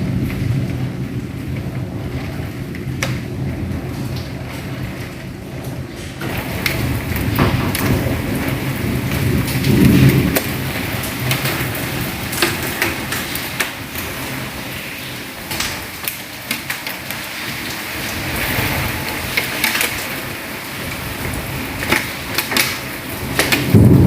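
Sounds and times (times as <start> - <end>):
heavy rain falling: 0.0 - 24.0.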